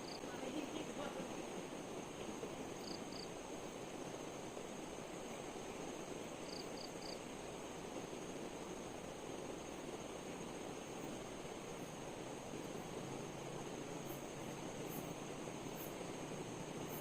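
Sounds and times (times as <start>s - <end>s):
high insect drone: 0.0s - 17.0s
river water flowing: 0.0s - 17.0s.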